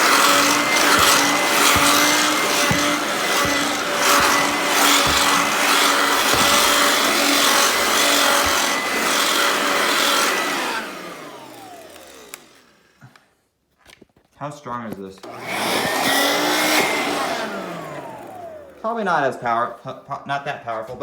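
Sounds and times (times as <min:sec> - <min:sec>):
vacuum nozzle rasping over surface: 0:00.0 - 0:12.4, 0:15.3 - 0:18.8
handheld vacuum motor whine: 0:00.0 - 0:13.0, 0:15.2 - 0:19.6.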